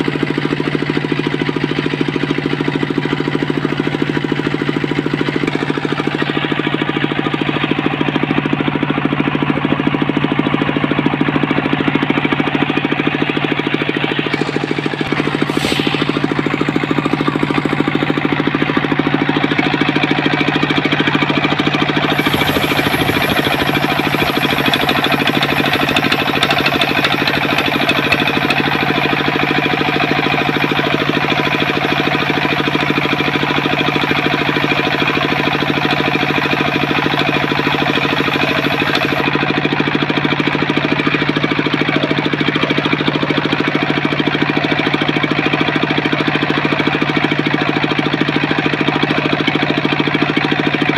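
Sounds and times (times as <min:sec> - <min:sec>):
sawmill motor chugging: 0:00.0 - 0:50.9
thin high whine: 0:13.6 - 0:18.0, 0:22.1 - 0:39.3.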